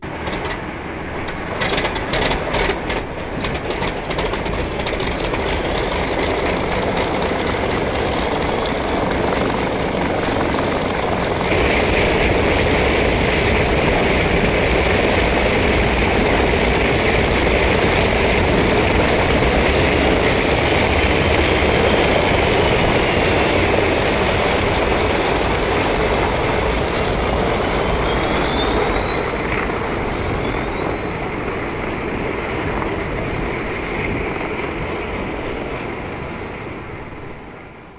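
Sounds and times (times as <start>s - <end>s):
train wheel clicks: 0.0s - 27.1s
train rumbling on rails: 0.0s - 37.9s.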